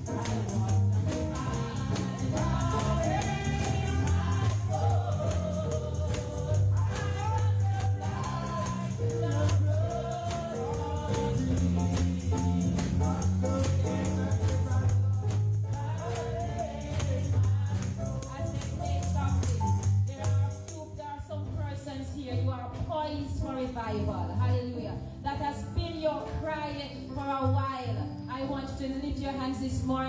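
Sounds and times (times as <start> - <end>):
voices singing slow chorus: 0.0 - 15.1
bass line: 0.0 - 28.7
tambourine shaken: 0.0 - 30.0.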